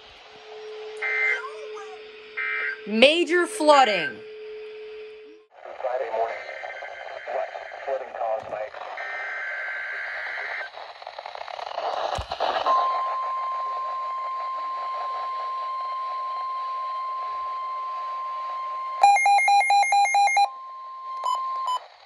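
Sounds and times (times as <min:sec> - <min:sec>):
radio hiss: 0:00.0 - 0:04.2, 0:05.6 - 0:18.7
rapid electronic beeping: 0:00.5 - 0:16.2.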